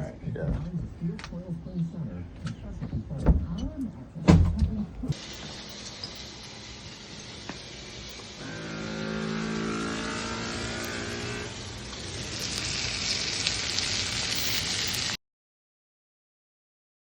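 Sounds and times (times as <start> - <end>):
rushing hiss: 5.2 - 15.2.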